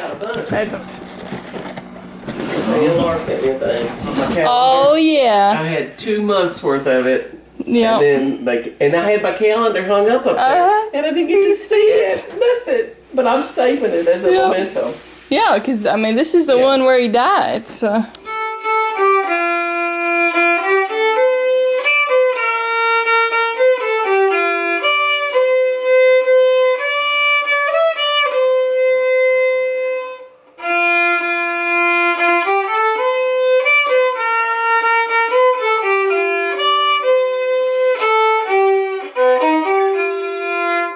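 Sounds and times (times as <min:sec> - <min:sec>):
solo violin slow melody: 0:18.2 - 0:40.9.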